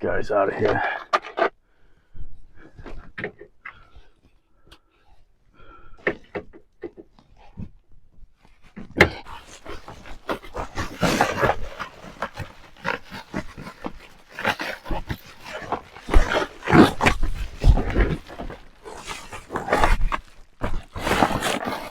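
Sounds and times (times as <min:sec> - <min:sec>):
foam tearing and crackling: 0:09.1 - 0:21.9.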